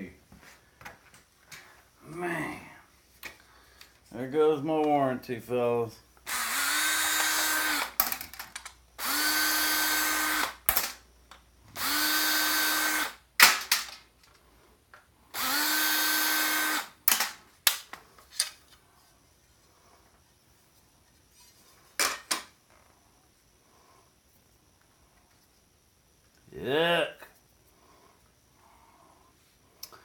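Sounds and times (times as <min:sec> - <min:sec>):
cordless power driver spinning: 0:06.2 - 0:08.2, 0:09.0 - 0:11.0, 0:11.7 - 0:13.2, 0:15.3 - 0:17.0
clicks and knocks of small parts: 0:08.0 - 0:08.8, 0:10.7 - 0:11.4, 0:13.4 - 0:15.0, 0:17.1 - 0:18.6.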